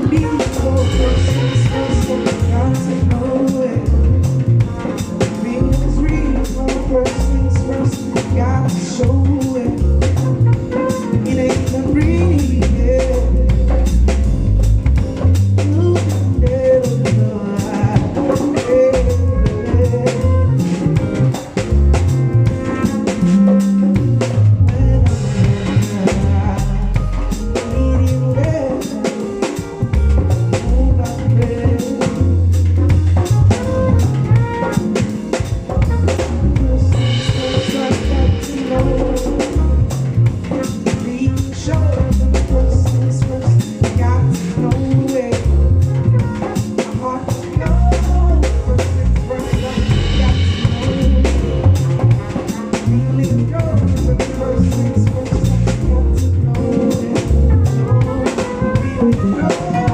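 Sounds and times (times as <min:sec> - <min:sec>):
live band playing: 0:00.0 - 0:59.9.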